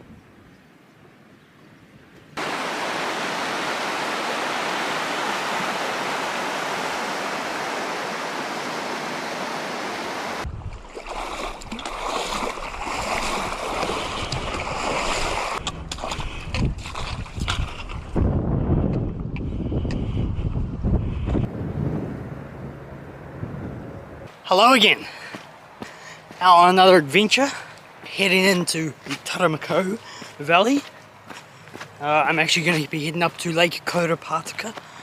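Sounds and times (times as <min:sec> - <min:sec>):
wind gusting on microphone: 0:01.8 - 0:24.3
stream water rushing: 0:02.4 - 0:16.2.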